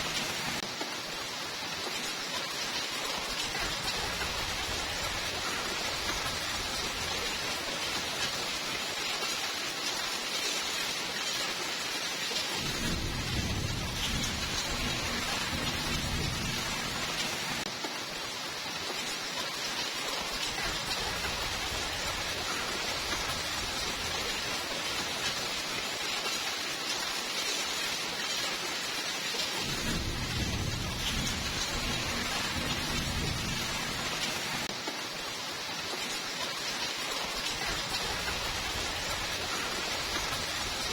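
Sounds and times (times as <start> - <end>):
heavy rain hissing: 0.0 - 40.9
thunder rumbling: 12.6 - 17.6, 29.6 - 34.7.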